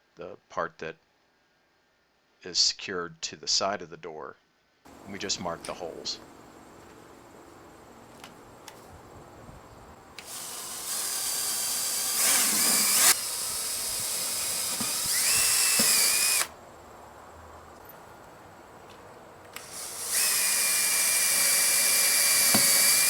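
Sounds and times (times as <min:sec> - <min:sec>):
power drill whining: 0:10.2 - 0:16.5, 0:19.6 - 0:23.0.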